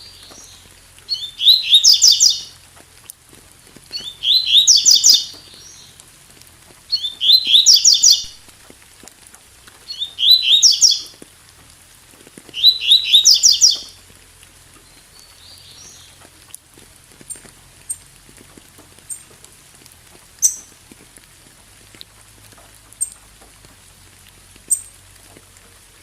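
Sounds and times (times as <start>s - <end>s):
faint rain: 0.0s - 26.0s
bird singing rapid high notes: 0.1s - 2.5s, 3.9s - 5.9s, 6.9s - 8.4s, 9.9s - 11.1s, 12.6s - 13.9s.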